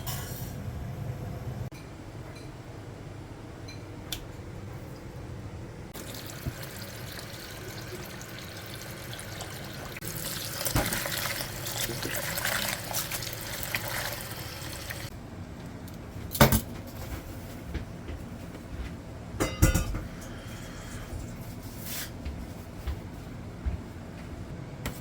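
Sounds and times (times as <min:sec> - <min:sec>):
water running: 0:05.9 - 0:15.1.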